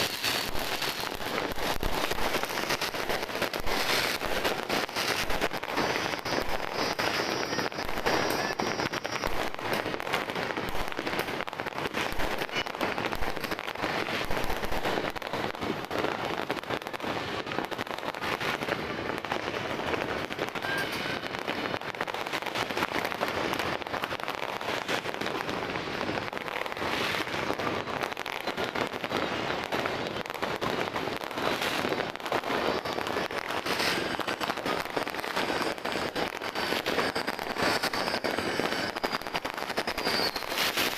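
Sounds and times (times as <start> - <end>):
firecrackers popping: 0.0 - 40.9.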